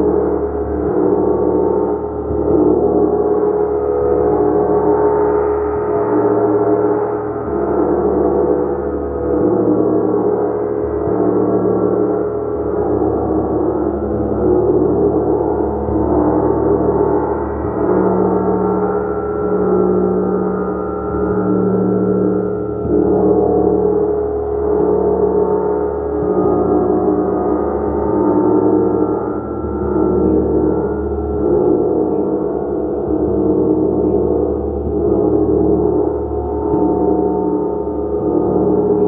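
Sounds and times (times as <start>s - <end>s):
gong ringing: 12.8s - 39.0s.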